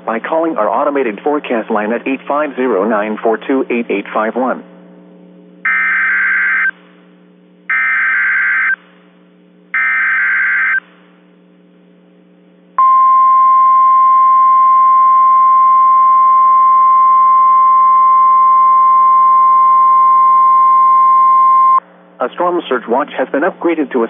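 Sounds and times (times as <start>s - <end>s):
steady warning alarm tone: 5.7s - 6.8s, 7.7s - 8.8s, 9.8s - 10.9s.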